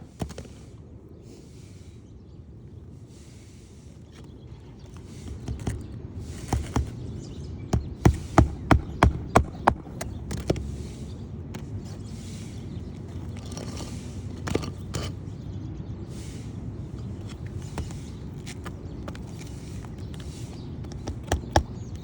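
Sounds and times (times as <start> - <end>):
nails driven into roof shingles: 4.2 - 15.4, 17.0 - 22.0.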